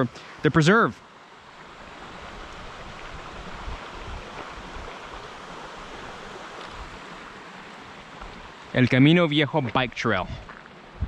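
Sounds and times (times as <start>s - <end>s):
wind buffeting microphone: 2.3s - 5.3s.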